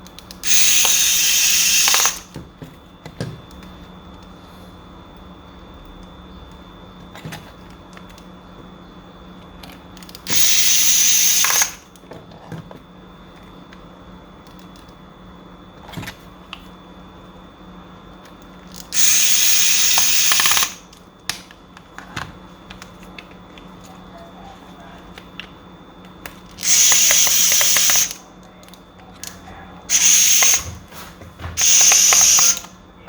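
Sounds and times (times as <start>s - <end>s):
electric screwdriver running: 0.4s - 2.3s, 10.3s - 11.8s, 18.8s - 20.8s, 26.6s - 28.2s, 29.9s - 30.8s, 31.6s - 32.7s.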